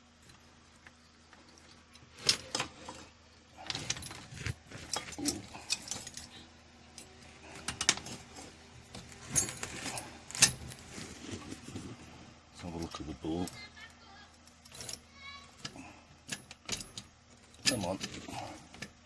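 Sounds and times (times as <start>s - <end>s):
metal parts clinking and rattling: 1.3s - 11.9s, 12.6s - 19.0s
rustling: 7.1s - 12.4s.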